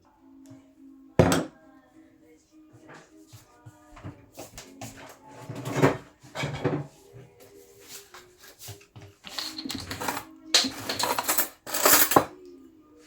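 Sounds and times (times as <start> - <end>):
faint background music: 0.0 - 13.0
kitchen containers clattering: 5.3 - 6.9, 9.0 - 12.4.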